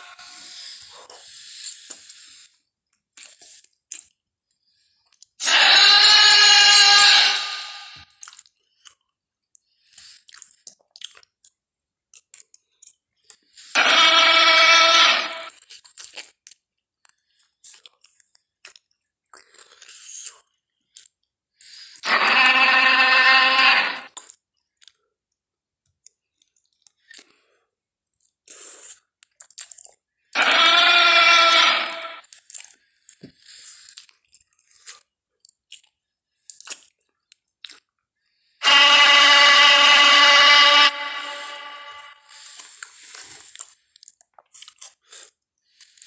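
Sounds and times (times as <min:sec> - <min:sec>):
crunching and chewing clicks: 0:00.3 - 0:07.4, 0:08.0 - 0:14.0, 0:15.5 - 0:22.9, 0:23.5 - 0:31.2, 0:32.2 - 0:39.3, 0:42.3 - 0:46.0
harsh dinosaur roars: 0:05.4 - 0:08.0, 0:13.8 - 0:15.5, 0:22.1 - 0:24.1, 0:30.4 - 0:32.2, 0:38.6 - 0:42.2.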